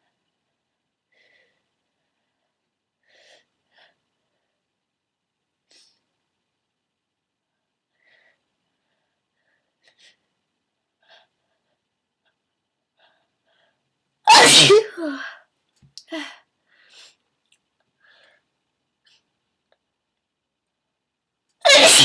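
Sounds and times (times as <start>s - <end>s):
woman sneezing loudly: 14.3s - 15.3s, 21.6s - 22.0s.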